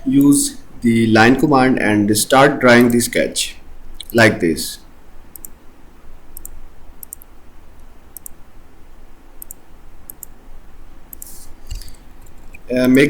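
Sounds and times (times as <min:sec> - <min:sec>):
faint low hum: 0:00.0 - 0:13.0
computer mouse clicking: 0:05.3 - 0:05.6, 0:06.4 - 0:08.4, 0:09.4 - 0:10.4, 0:11.1 - 0:11.9.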